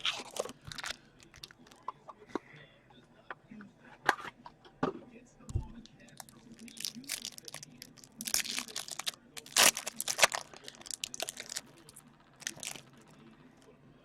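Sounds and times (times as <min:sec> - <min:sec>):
wrappers tearing and crinkling: 0:00.0 - 0:01.8, 0:06.1 - 0:13.1.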